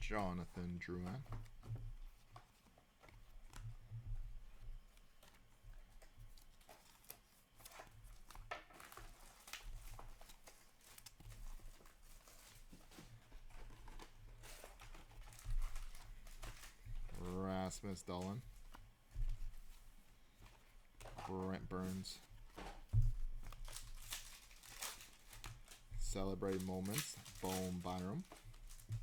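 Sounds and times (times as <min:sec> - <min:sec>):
cards and plastic crinkling: 0:00.0 - 0:29.0
low steady hum: 0:16.6 - 0:29.0.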